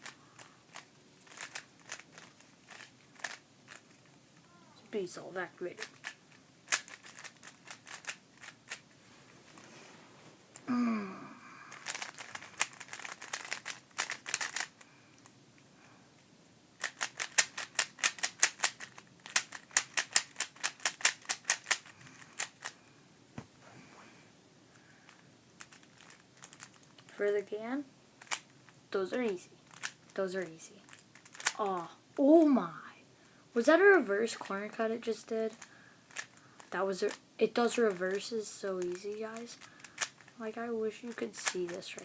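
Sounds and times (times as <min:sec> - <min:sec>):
puzzle cube layers clicking: 0:00.0 - 0:04.0, 0:05.8 - 0:08.8, 0:11.8 - 0:14.8, 0:16.8 - 0:22.7.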